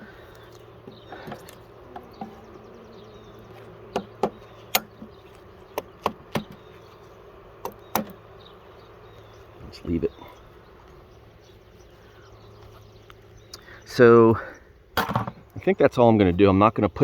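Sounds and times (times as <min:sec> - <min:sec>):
bees buzzing: 0:00.0 - 0:15.5
wooden hive frames knocking: 0:00.6 - 0:09.0.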